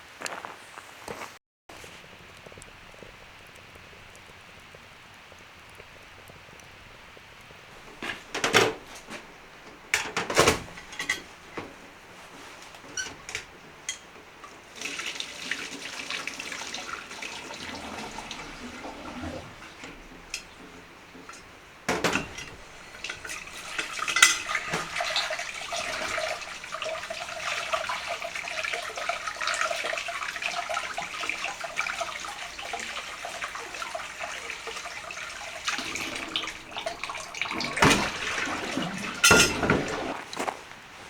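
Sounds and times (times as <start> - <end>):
water pouring into pot: 1.8 - 40.4
metal pot and utensils clanking: 7.8 - 14.7, 16.9 - 40.3.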